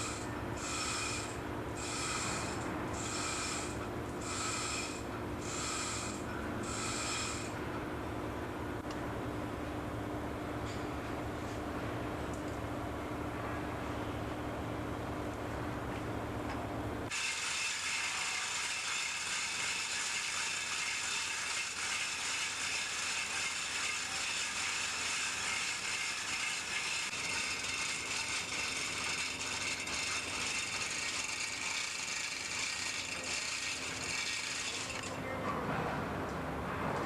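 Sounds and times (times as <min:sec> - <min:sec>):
rapid mechanical ticking clatter: 0:17.1 - 0:35.1.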